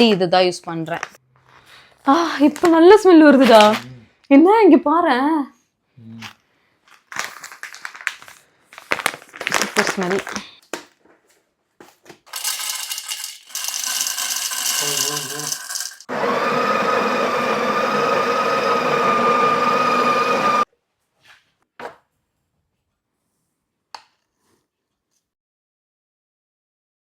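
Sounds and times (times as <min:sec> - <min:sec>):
coffee grinder grinding beans: 0:12.3 - 0:20.7
grinder motor whine: 0:13.5 - 0:20.7.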